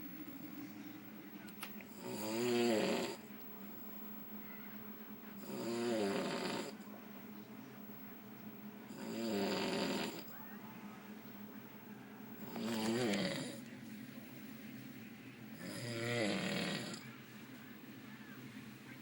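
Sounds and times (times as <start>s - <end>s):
man snoring heavily: 1.9s - 3.2s, 5.4s - 6.8s, 8.9s - 10.3s, 12.4s - 13.6s, 15.6s - 17.0s.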